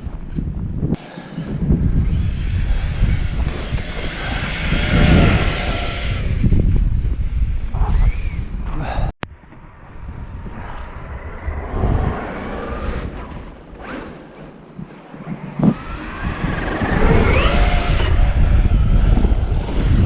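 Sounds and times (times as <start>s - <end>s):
wind rumbling on microphone: 0.0s - 20.0s
electric motor whining: 1.4s - 8.6s, 15.5s - 20.0s.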